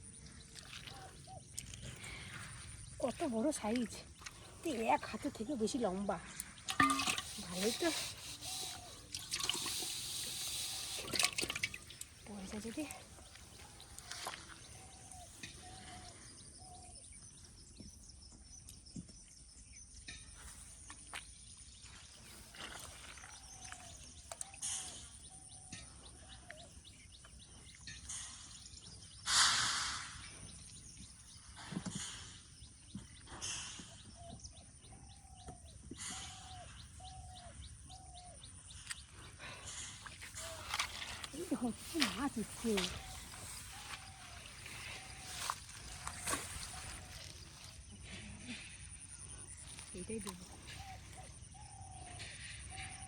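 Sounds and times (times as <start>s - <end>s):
birds calling: 0.0s - 16.9s, 35.2s - 48.2s, 48.8s - 53.0s.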